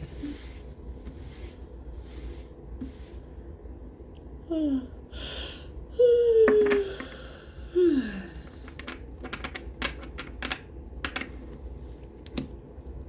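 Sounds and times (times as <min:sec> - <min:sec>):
person humming: 0:04.4 - 0:05.0, 0:05.9 - 0:08.4
person breathing: 0:04.5 - 0:08.8.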